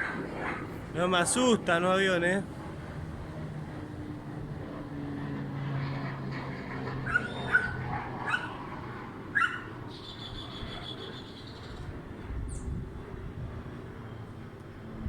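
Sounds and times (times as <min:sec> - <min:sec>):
aircraft engine drone: 0:00.0 - 0:15.0
dog barking: 0:07.1 - 0:08.6, 0:09.3 - 0:09.7.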